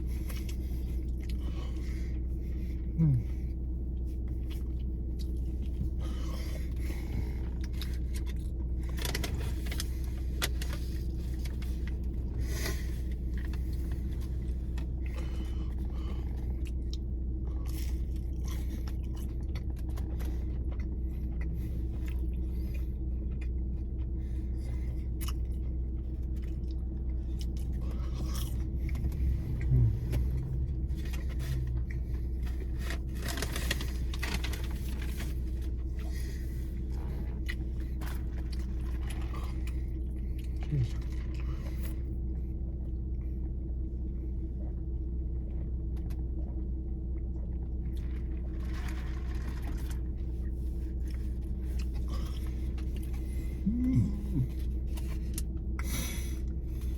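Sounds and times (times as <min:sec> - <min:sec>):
steady low hum: 0:00.0 - 0:56.9
chewing: 0:03.2 - 0:42.0, 0:47.2 - 0:56.9
food wrappers crinkling: 0:32.5 - 0:35.5.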